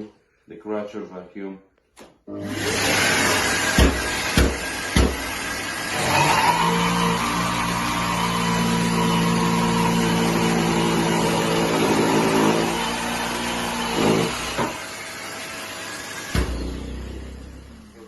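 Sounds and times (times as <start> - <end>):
jigsaw cutting wood: 2.3 - 18.0
vacuum running: 2.4 - 18.0.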